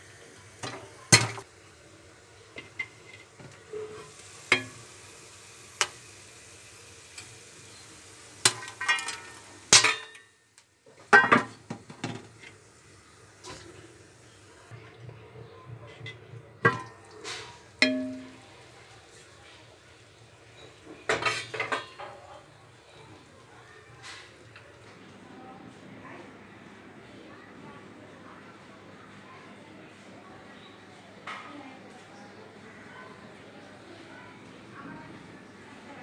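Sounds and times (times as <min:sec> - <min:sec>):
ringing metal clang: 0:17.8 - 0:18.4.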